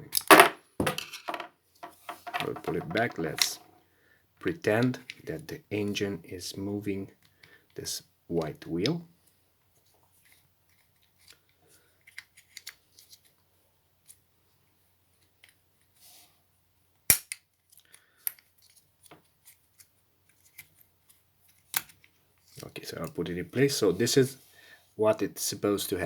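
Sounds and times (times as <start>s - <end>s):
plastic latch clicks and knocks: 0.1s - 3.5s.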